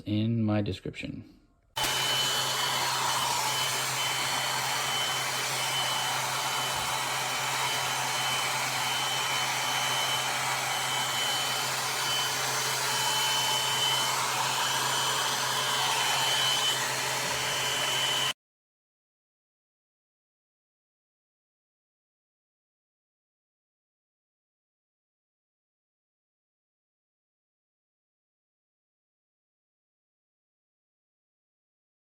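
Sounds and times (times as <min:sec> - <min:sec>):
hair dryer brush running: 0:01.8 - 0:18.4.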